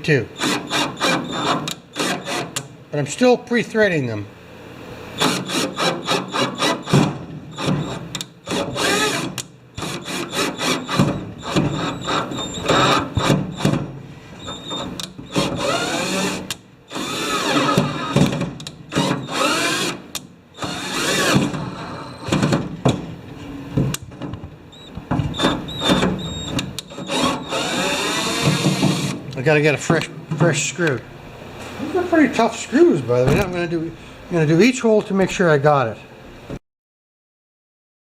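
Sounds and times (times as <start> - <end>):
power drill driving screws: 0.4 - 2.6, 5.2 - 13.8, 14.4 - 22.5, 25.3 - 29.2
drill clicks: 0.4 - 2.7, 5.2 - 13.8, 14.4 - 22.6, 24.7 - 29.4.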